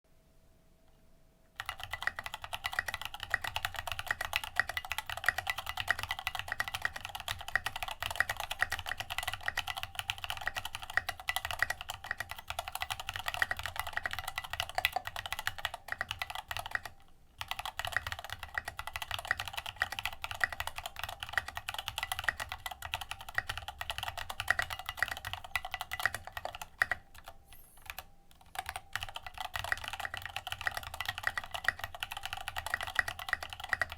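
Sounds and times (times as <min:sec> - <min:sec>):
mechanical keyboard typing: 0:01.6 - 0:33.9.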